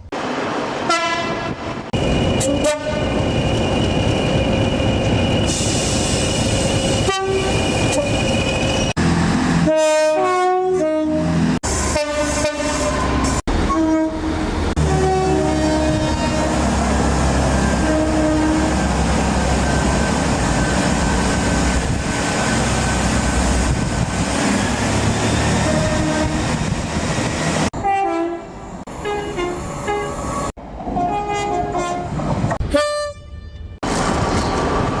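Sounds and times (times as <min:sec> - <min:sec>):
train rumbling past: 0:00.0 - 0:32.8, 0:33.7 - 0:35.0
train horn blasts: 0:00.9 - 0:01.6, 0:02.4 - 0:03.1, 0:07.0 - 0:07.5, 0:09.6 - 0:16.6, 0:17.8 - 0:18.8, 0:25.6 - 0:26.4, 0:27.7 - 0:30.2, 0:31.0 - 0:33.8.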